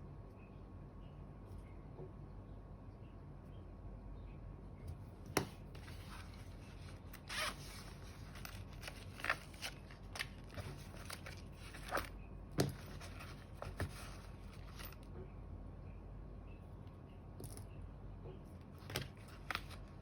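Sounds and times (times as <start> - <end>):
packaging rustles: 5.8 - 15.0.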